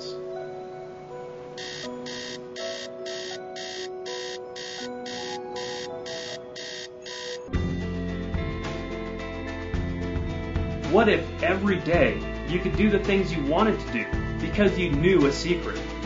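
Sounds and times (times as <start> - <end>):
soft background music: 0.0 - 16.0
alarm clock beeping: 1.6 - 7.8.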